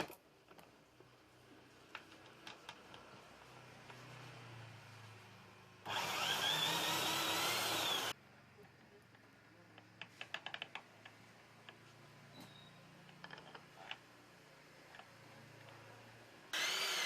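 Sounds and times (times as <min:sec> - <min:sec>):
electric drill whine: 0:05.8 - 0:08.1, 0:16.5 - 0:17.0.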